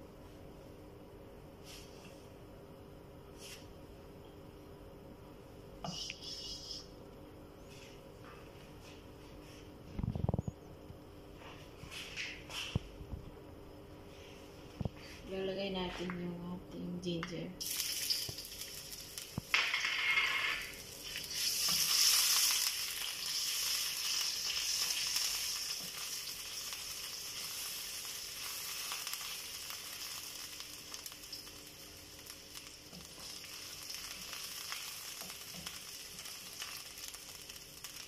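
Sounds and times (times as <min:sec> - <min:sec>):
ginger sizzling in hot oil: 0:17.6 - 0:38.0.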